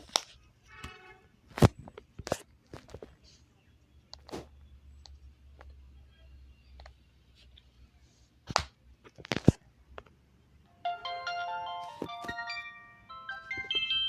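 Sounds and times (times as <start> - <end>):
phone ringtone melody: 10.7 - 14.0.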